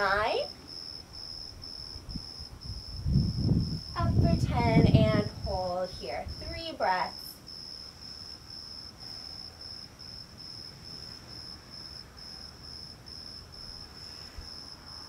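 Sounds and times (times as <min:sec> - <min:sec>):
cricket chirping: 0:00.0 - 0:15.0
faint low rumble: 0:01.2 - 0:06.8.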